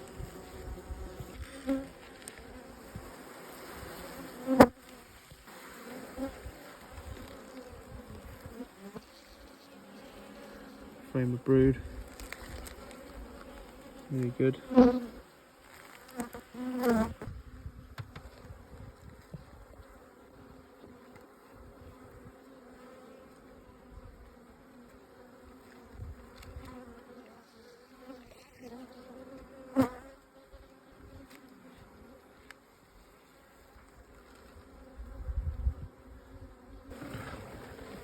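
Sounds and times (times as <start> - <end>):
honeybees humming: 0.0 - 18.6, 34.3 - 38.0.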